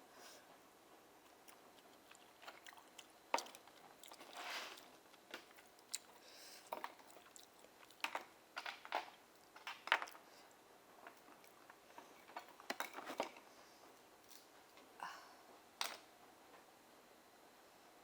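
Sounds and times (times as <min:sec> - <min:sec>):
chewing and wet smacking: 0:01.2 - 0:08.3, 0:09.3 - 0:12.6
slurp: 0:01.4 - 0:05.0.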